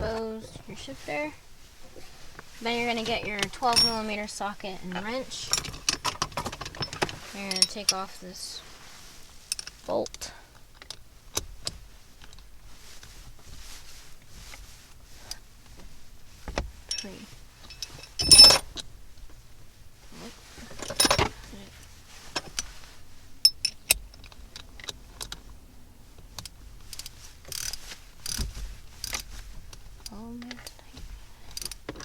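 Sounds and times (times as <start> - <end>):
loud metallic clatters: 3.6 - 4.2.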